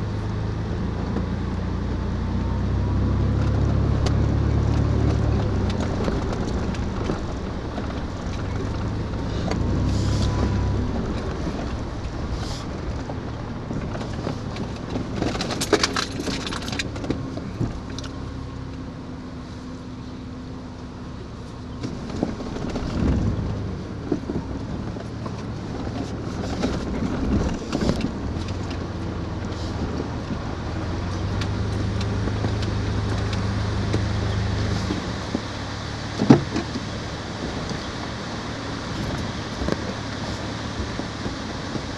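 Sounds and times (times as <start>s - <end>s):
vehicle engine humming: 0.0s - 41.9s
rattling and clinking: 4.2s - 18.2s.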